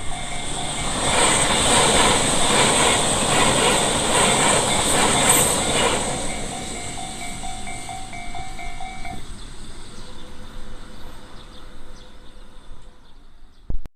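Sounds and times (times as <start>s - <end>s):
level crossing warning bell: 0.0s - 1.9s, 3.7s - 9.5s
train running noise: 0.0s - 13.8s.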